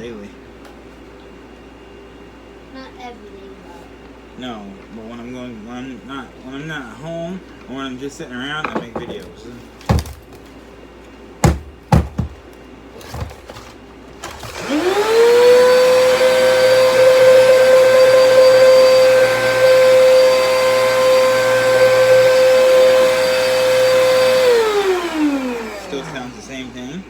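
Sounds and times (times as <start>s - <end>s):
vacuum cleaner motor whine: 8.6s - 10.2s, 13.0s - 27.0s
sharp knocks: 11.4s - 12.4s.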